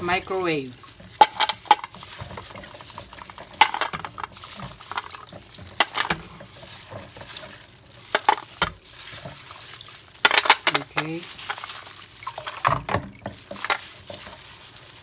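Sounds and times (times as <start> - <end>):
oyster shells clinking on a plate: 0.1 - 6.5, 8.0 - 8.8, 10.2 - 14.2.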